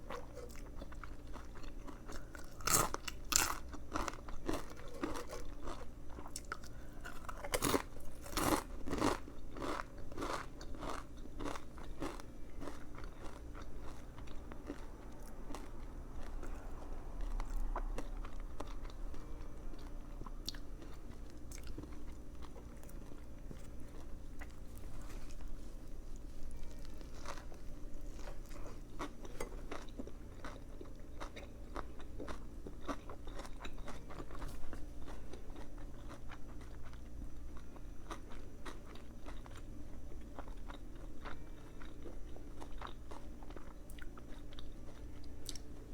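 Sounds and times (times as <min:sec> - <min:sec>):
quiet chewing: 0:00.1 - 0:45.9
crunchy sandwich bites: 0:02.0 - 0:14.8.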